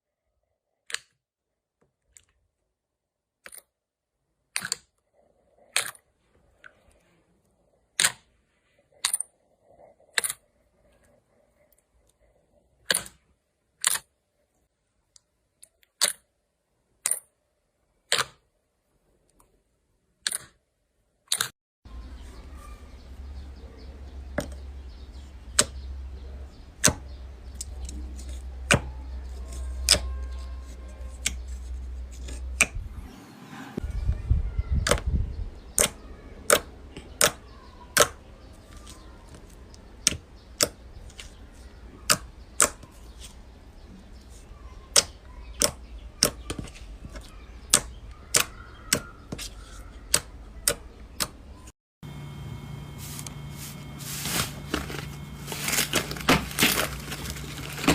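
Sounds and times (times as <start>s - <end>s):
steady low hum: 52.0s - 57.9s.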